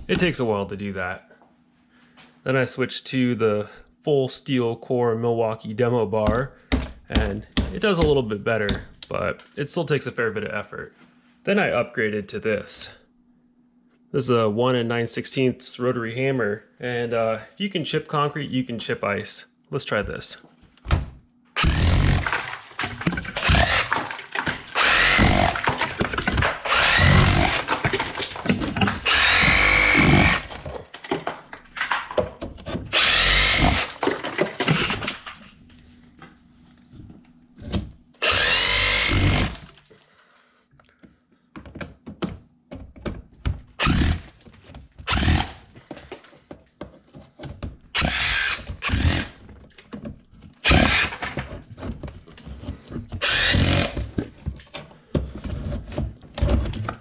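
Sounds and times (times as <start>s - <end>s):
rotary hammer chipping ice: 21.6s - 32.2s, 32.9s - 35.4s, 38.2s - 39.8s, 43.8s - 44.4s, 45.1s - 45.7s, 48.0s - 49.5s, 50.6s - 51.4s, 53.2s - 54.1s.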